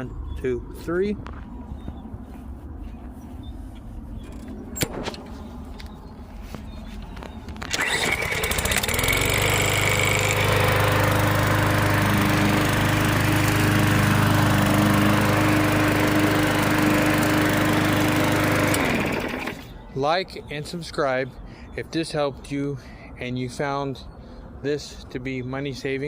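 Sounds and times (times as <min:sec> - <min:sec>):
lawnmower engine starting and running: 0:06.4 - 0:19.8.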